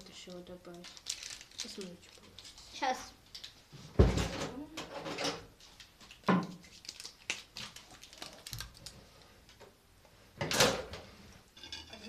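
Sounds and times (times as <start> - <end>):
kitchen things clicking and tapping: 10.4 - 12.0.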